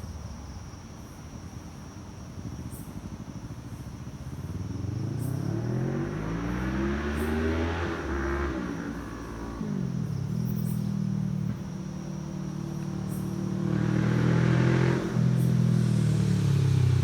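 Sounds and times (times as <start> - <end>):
motorcycle engine revving: 4.3 - 17.0.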